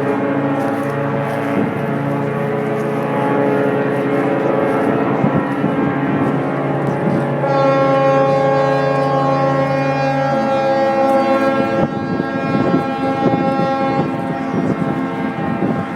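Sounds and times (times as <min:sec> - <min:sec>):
ships' horns blowing a chord: 0:00.0 - 0:15.9.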